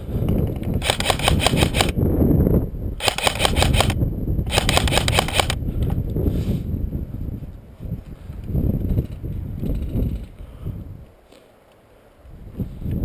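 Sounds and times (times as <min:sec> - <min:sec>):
airsoft gun firing full auto: 0:00.8 - 0:02.0, 0:03.0 - 0:05.6.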